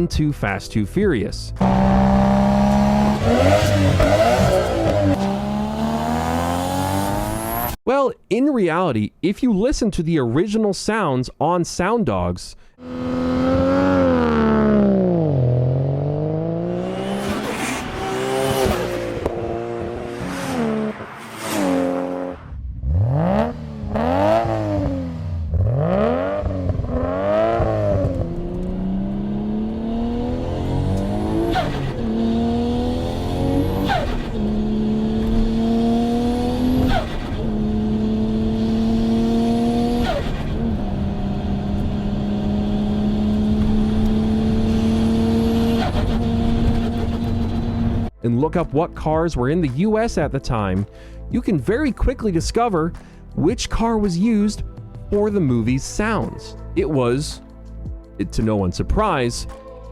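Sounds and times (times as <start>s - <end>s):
car engine revving and shifting gears: 1.6s - 7.8s, 12.8s - 48.1s.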